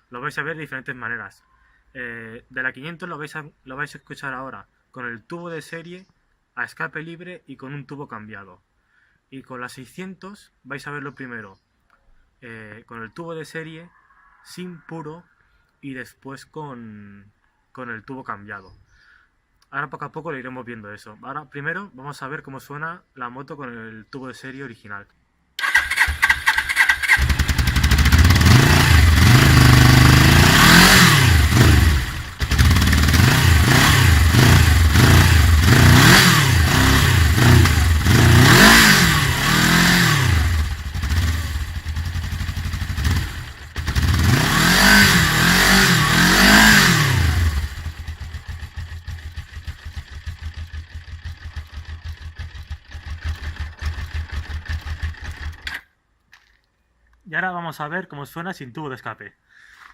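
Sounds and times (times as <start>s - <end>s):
motorcycle engine idling: 25.6s - 45.8s, 46.5s - 55.7s
motorcycle engine revving: 25.6s - 55.8s.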